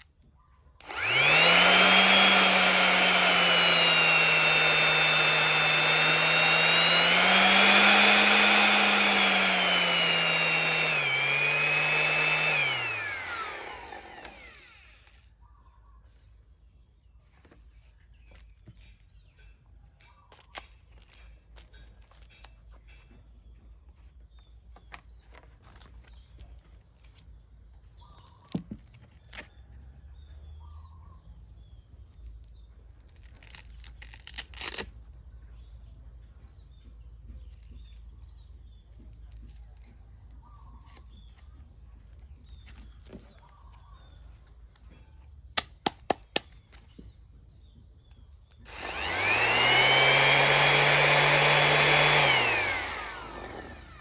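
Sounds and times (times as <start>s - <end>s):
orbital sander motor whine: 0.8s - 15.2s, 48.7s - 54.0s.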